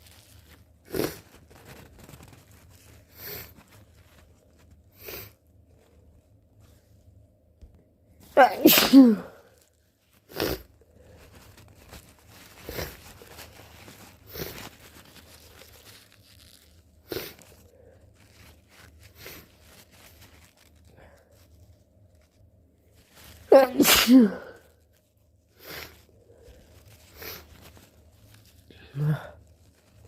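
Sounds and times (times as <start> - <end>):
person sneezing: 8.4 - 9.4, 23.5 - 24.6.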